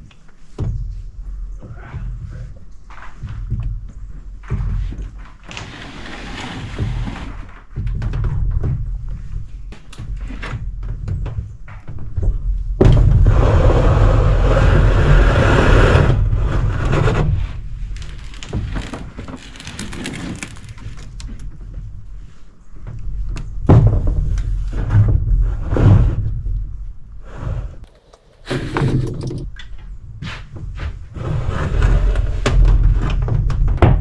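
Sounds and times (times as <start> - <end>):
roofing panels scraping and knocking: 4.5 - 8.5, 13.2 - 21.4, 27.9 - 29.5.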